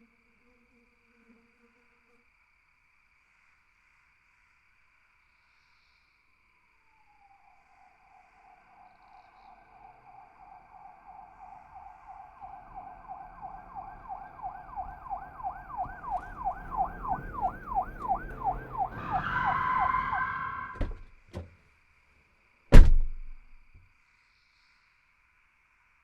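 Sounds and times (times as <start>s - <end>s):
police siren wailing: 7.8s - 21.0s
tyre screech: 15.8s - 21.5s
loud bang: 22.7s - 23.5s.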